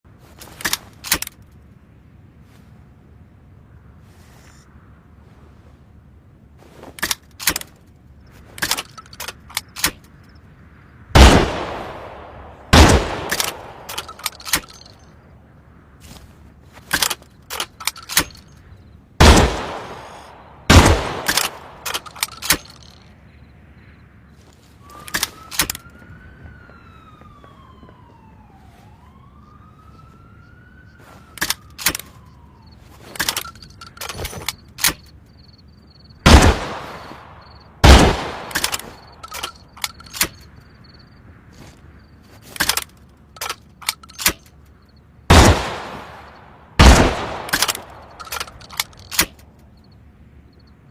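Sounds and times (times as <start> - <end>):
metallic clicks of gun action: 0.4 - 1.6, 6.9 - 10.4, 13.2 - 15.1, 16.8 - 18.8, 20.1 - 23.2, 24.9 - 25.9, 31.3 - 35.5, 37.4 - 40.7, 42.4 - 44.8, 46.3 - 49.8
shotgun shots: 11.2 - 14.8, 19.2 - 22.9, 36.2 - 39.4, 45.3 - 49.2.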